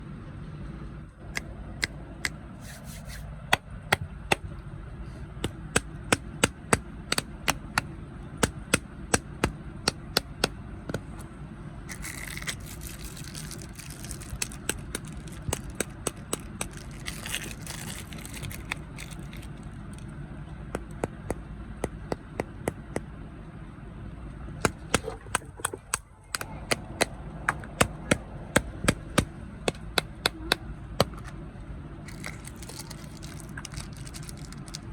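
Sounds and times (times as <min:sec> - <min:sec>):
steady low hum: 0:00.0 - 0:34.9
crunchy snacks being chewed: 0:11.9 - 0:20.0, 0:32.1 - 0:34.9
snack wrapper crinkling: 0:11.9 - 0:20.0, 0:32.1 - 0:34.9.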